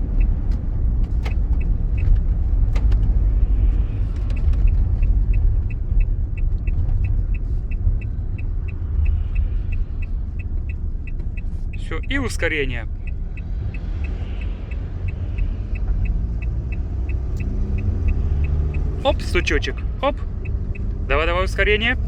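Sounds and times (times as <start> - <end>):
diesel van engine rumbling: 0.0 - 22.0
light even ticking: 0.0 - 22.0.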